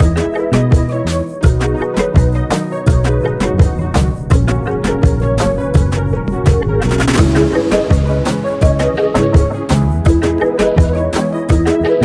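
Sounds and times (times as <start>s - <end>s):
background music with beat: 0.0s - 12.0s
low drum beats: 1.7s - 10.9s.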